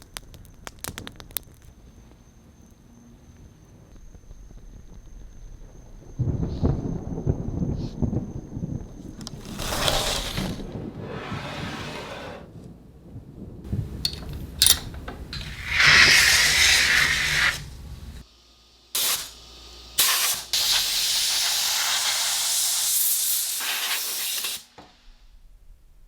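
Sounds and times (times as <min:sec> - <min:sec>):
hissing spray: 0:15.3 - 0:18.2, 0:19.0 - 0:19.4, 0:20.0 - 0:24.8.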